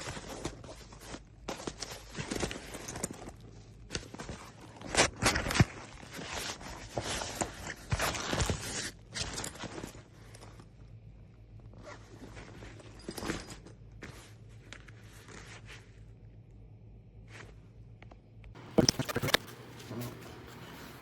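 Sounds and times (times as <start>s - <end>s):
backpack zipper pulled: 18.8s - 20.6s.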